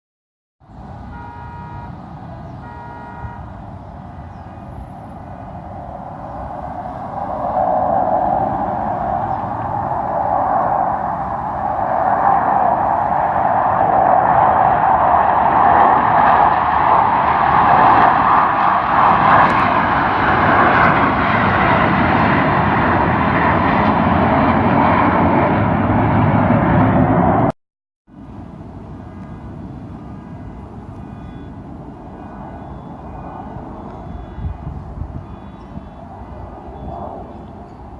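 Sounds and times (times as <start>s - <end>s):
jet rumble: 0.7s - 27.5s, 28.2s - 37.9s
short horn toots: 1.1s - 3.6s.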